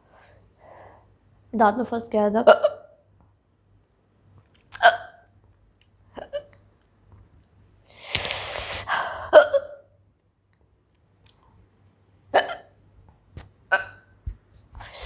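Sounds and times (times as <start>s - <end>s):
woman hiccupping: 13.7s - 14.2s.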